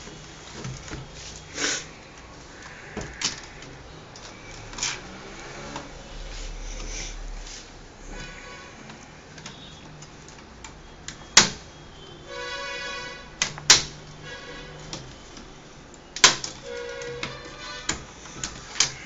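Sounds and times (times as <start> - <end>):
plastic clips snapping loose: 3.0 - 5.0, 8.9 - 11.7, 13.4 - 14.2, 14.8 - 19.0.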